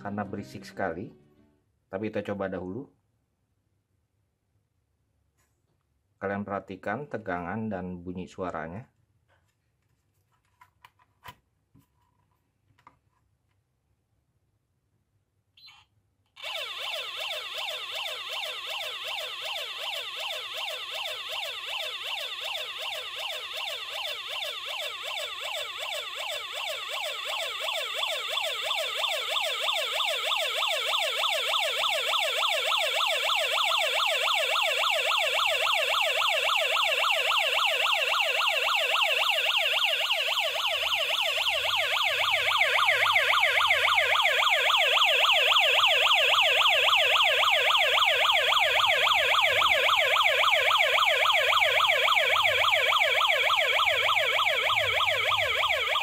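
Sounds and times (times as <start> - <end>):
electronic siren tone: 16.4 - 56.0.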